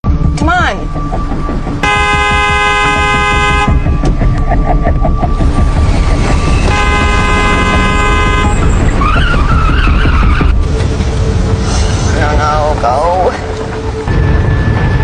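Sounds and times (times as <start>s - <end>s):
low rumble of traffic: 0.9s - 15.0s
car horn blast: 1.8s - 4.0s, 6.7s - 8.8s.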